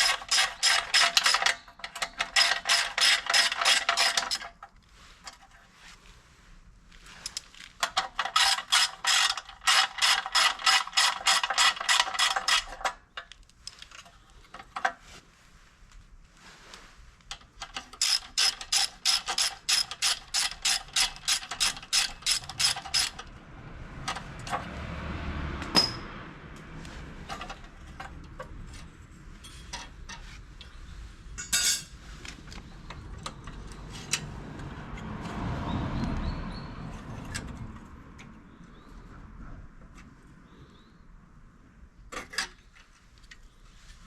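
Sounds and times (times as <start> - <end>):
tools and metal parts knocking: 0.0 - 4.5, 7.8 - 13.0, 17.6 - 23.3
ratchet wrench clicking: 17.9 - 23.3.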